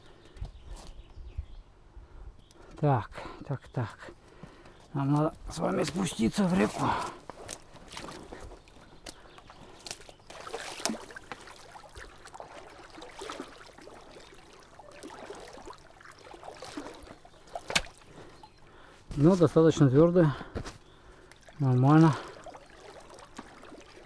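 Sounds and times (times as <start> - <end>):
person wading through water: 5.4 - 24.0.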